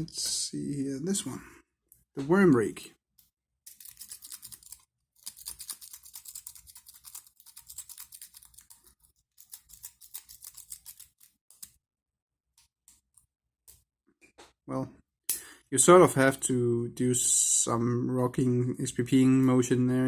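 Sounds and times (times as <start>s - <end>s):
lock pick scraping over pins: 3.7s - 11.8s.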